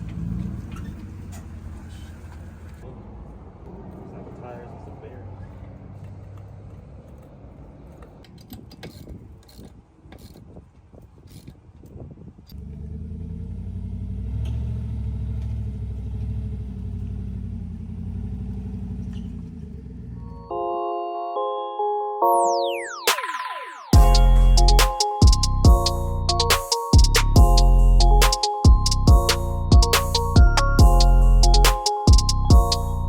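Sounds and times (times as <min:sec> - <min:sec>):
vehicle engine running: 0:00.0 - 0:02.8.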